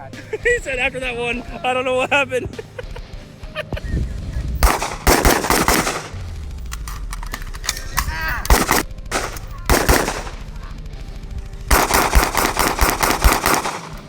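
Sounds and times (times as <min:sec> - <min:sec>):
gunshots: 0:04.0 - 0:14.0
rapid gunfire: 0:04.1 - 0:14.0.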